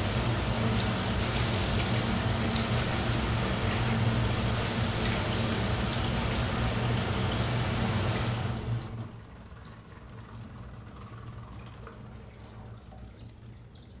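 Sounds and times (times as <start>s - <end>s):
shower water spraying: 0.0s - 9.1s
faint water drips: 8.1s - 14.0s.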